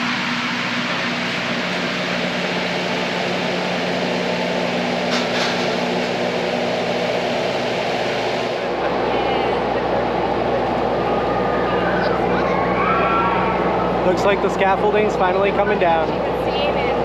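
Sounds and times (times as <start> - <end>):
mechanical drone: 0.0 - 17.0.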